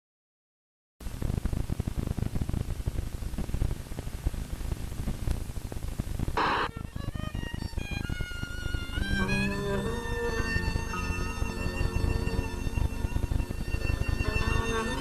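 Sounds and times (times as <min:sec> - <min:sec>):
film crackle and hiss: 0:01.0 - 0:08.6
brief burst of noise: 0:06.4 - 0:06.7
low pops: 0:06.4 - 0:06.7.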